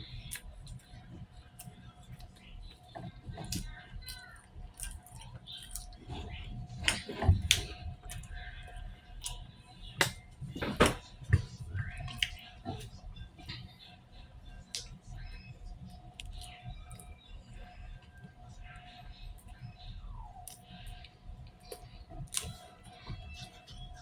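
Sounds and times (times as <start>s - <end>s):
faint background music: 0.0s - 24.0s
chewing with mouth clicks: 0.2s - 13.6s.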